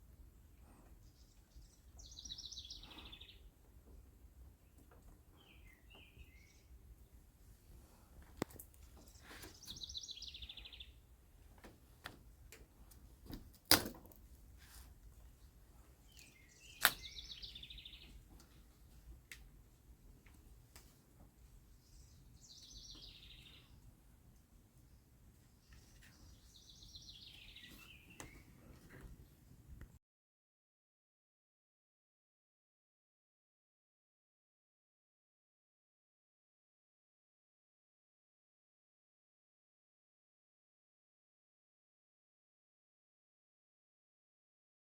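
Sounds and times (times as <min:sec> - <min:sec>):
faint outdoor background: 0:00.0 - 0:30.0
songbird trilling: 0:02.0 - 0:03.4, 0:09.4 - 0:11.0, 0:16.1 - 0:18.1, 0:22.0 - 0:23.6
sharp clicks: 0:16.8 - 0:17.1.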